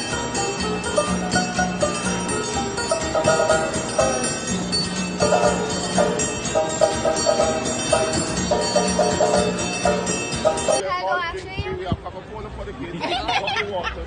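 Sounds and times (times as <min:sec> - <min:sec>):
bright repeating melody: 0:00.0 - 0:10.8.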